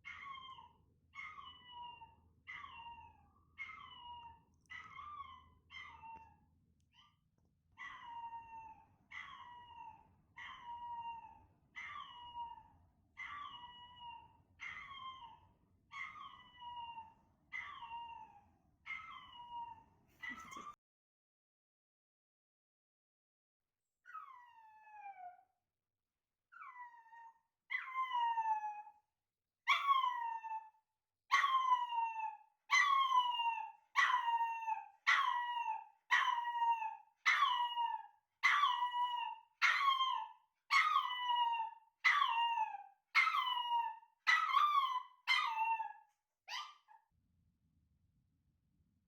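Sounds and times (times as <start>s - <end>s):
puppy whining yelps: 0.0s - 6.4s, 7.8s - 20.8s, 24.0s - 25.4s, 26.5s - 29.0s, 29.7s - 47.0s.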